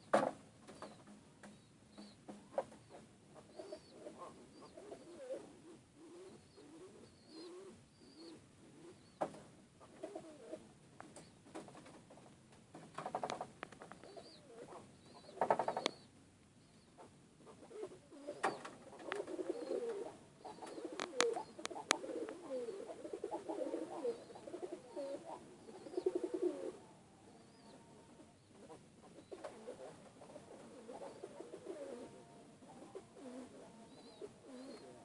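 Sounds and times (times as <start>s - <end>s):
pigeons cooing: 0.7s - 11.3s, 13.1s - 16.1s, 16.8s - 35.0s.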